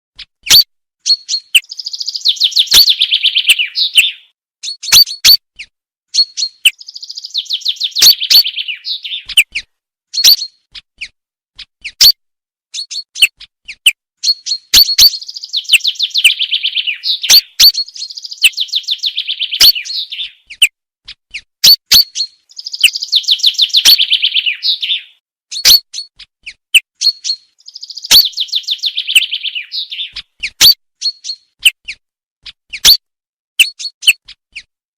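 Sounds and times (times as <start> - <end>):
chaffinch song: 0.2 - 34.8
sharp bird call notes: 0.5 - 5.4, 6.2 - 9.6, 14.2 - 20.6, 21.6 - 25.8, 27.0 - 31.5.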